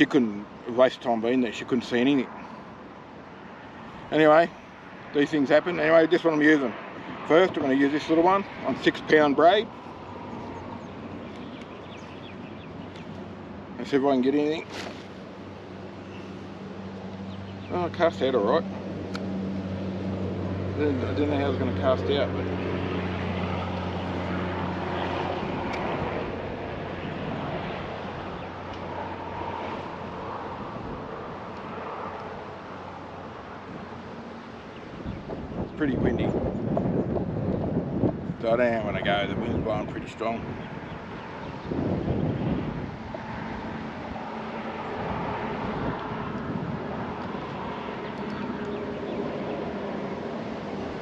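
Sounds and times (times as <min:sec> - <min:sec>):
distant engine hum: 0:00.0 - 0:51.0
strong wind buffeting microphone: 0:01.8 - 0:34.1, 0:34.8 - 0:51.0.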